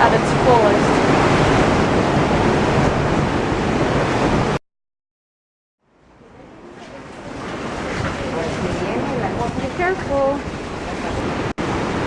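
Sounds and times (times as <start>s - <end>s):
hurricane wind and rain: 0.0s - 4.6s, 5.9s - 12.0s
wind buffeting microphone: 0.0s - 4.6s.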